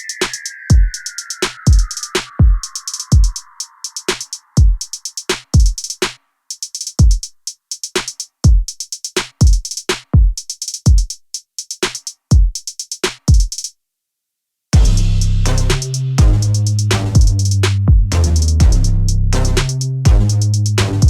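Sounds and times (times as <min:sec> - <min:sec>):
hi-hat ticks: 0:00.0 - 0:13.7, 0:15.2 - 0:21.0
deep kick drums: 0:14.8 - 0:21.0.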